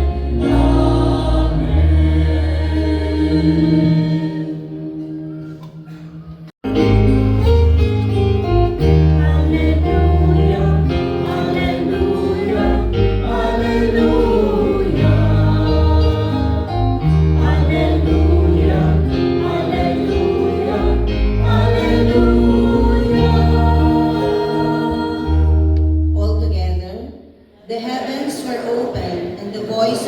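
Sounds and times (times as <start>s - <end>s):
church choir singing: 0.0s - 6.1s, 8.6s - 25.8s, 27.8s - 30.0s.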